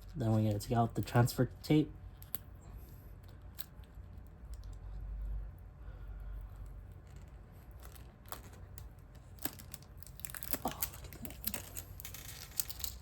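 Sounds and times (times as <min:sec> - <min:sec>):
tape crinkling and crackling: 0:00.0 - 0:05.4, 0:06.4 - 0:13.0
tape peeling off sticker: 0:06.6 - 0:13.0.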